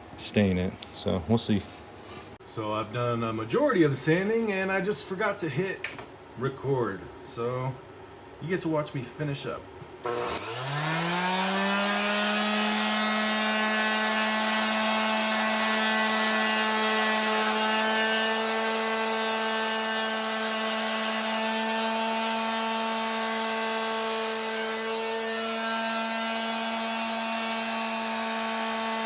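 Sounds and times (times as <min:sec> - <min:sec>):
electric sander motor whine: 0:10.0 - 0:29.0.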